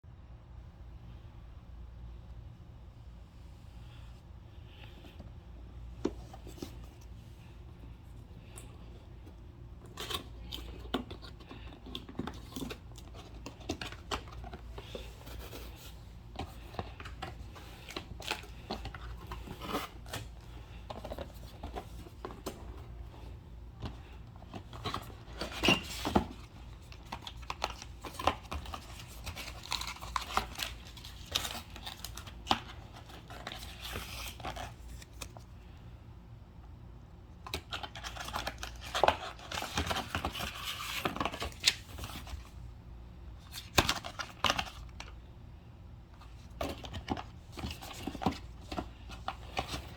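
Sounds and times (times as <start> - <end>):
low steady hum: 0.1 - 49.9
packaging tearing and crinkling: 24.6 - 35.4.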